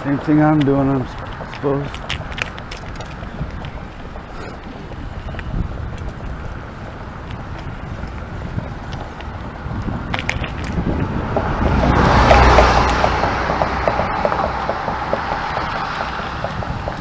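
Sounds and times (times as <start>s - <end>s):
vehicle passing close by: 0.0s - 17.0s
rapid even ticking: 12.3s - 17.0s.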